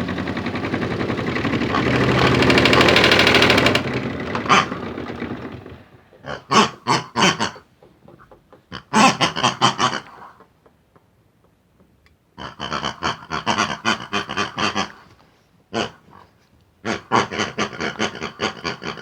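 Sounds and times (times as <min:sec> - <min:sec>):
toy washing machine motor rattling: 0:00.0 - 0:06.0.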